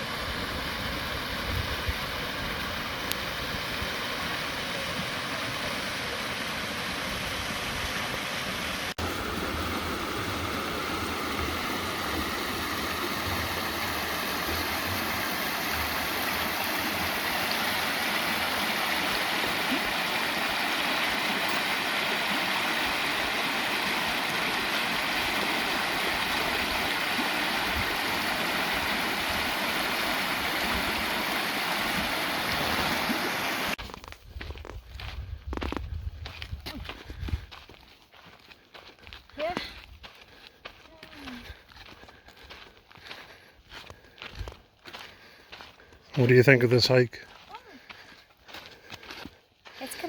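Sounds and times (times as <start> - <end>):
waterfall and creek rushing: 0.0 - 33.8.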